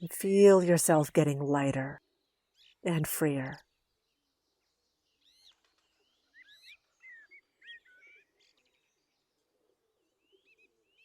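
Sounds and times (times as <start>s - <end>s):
faint bird chirps: 3.5s - 11.0s.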